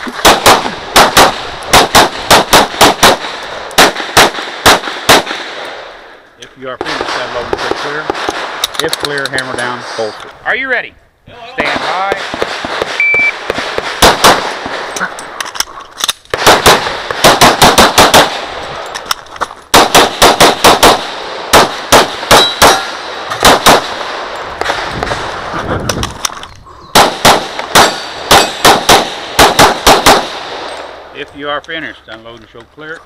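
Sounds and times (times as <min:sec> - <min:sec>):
pistol firing fast strings: 0:00.0 - 0:05.4, 0:16.0 - 0:24.0, 0:27.0 - 0:30.4
shot timer beep: 0:13.0 - 0:13.4.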